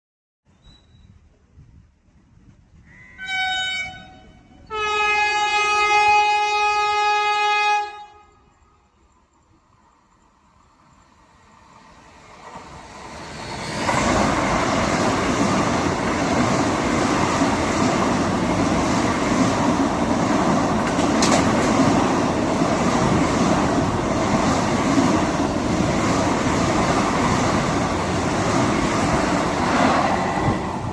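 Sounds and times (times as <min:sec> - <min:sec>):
train passing at high speed: 0:01.9 - 0:30.9.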